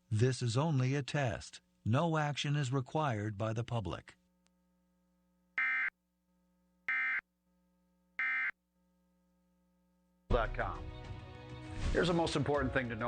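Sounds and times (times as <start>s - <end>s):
harsh buzzy data tone bursts: 5.6s - 6.0s, 6.9s - 7.2s, 8.2s - 8.6s.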